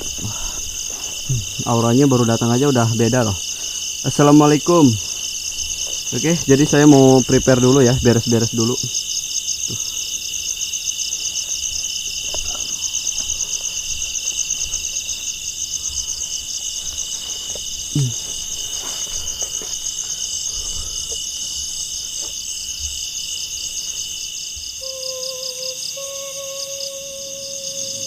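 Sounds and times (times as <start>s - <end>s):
insects trilling: 0.0s - 28.0s
low hooting tone: 24.8s - 28.0s.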